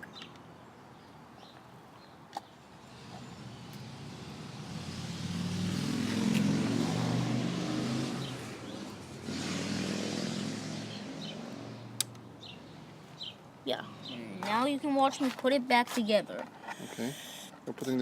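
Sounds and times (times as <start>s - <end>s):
vehicle engine passing by: 2.8s - 14.3s.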